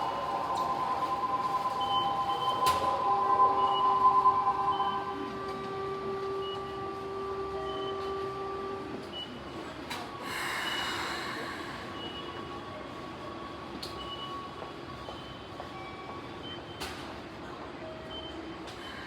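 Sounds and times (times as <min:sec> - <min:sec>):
train rumbling: 0:00.0 - 0:09.0.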